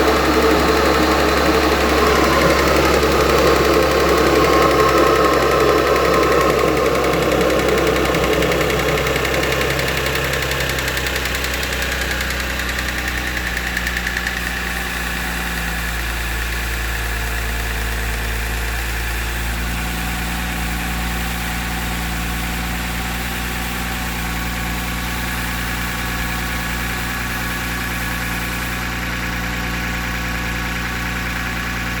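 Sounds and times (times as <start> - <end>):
car engine idling: 0.0 - 22.5
light rapid engine ticking: 0.0 - 32.0.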